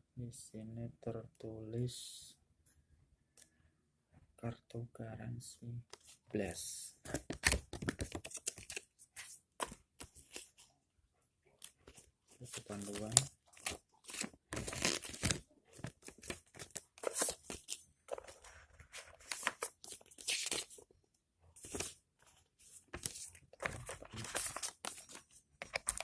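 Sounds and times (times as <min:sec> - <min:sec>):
packaging rustling and crinkling: 0:11.6 - 0:20.8, 0:22.7 - 0:26.0.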